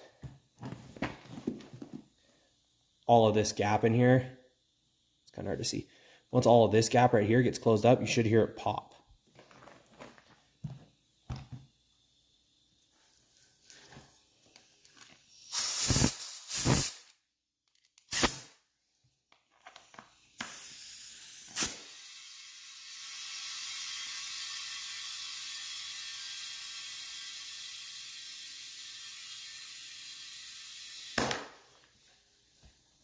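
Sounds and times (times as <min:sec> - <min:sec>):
compressed air hissing into tire: 0:10.5 - 0:17.1, 0:18.1 - 0:18.6, 0:20.1 - 0:33.0.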